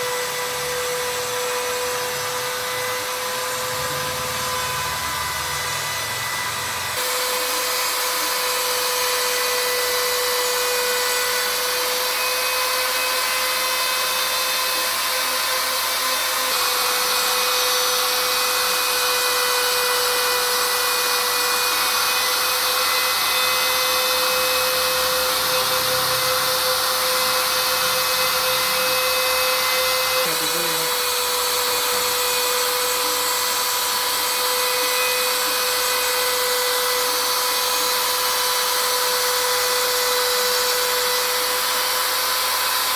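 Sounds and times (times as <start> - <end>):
spindle motor whine: 0.0 - 42.9
cutting hiss: 29.2 - 36.2.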